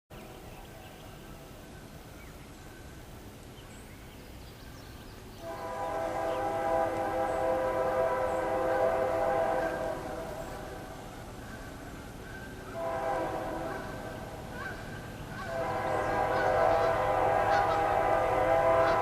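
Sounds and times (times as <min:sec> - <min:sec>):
locomotive air horn: 0:05.4 - 0:10.8, 0:12.7 - 0:14.4, 0:15.4 - 0:19.0.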